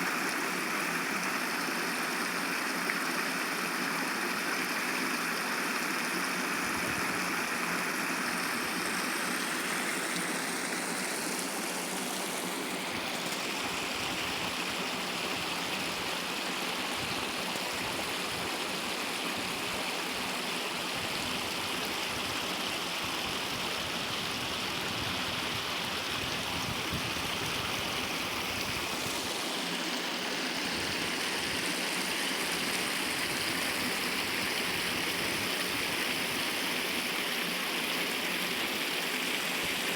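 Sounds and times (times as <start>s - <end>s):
stream of water flowing: 0.0s - 39.9s.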